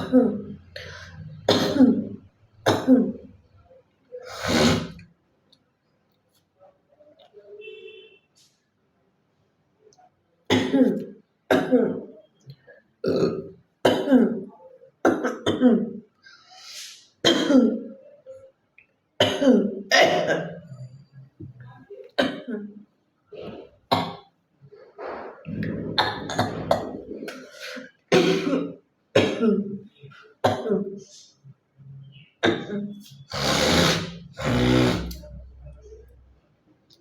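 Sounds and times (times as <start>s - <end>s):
woman coughing: 0.0s - 0.5s, 1.5s - 3.2s, 10.5s - 12.1s, 13.8s - 14.5s, 15.1s - 16.0s, 17.2s - 17.9s, 19.2s - 20.6s, 22.2s - 22.7s, 28.1s - 29.8s, 30.4s - 31.0s, 32.4s - 33.6s
throat clearing: 32.4s - 35.5s.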